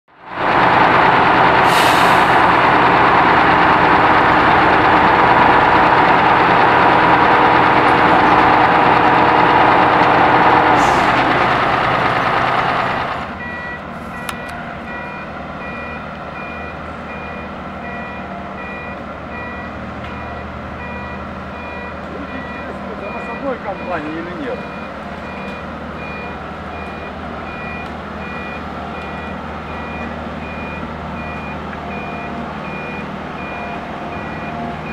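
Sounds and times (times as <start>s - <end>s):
heavy vehicle engine running: 0.1s - 34.9s
reversing alarm beeping: 12.0s - 34.9s.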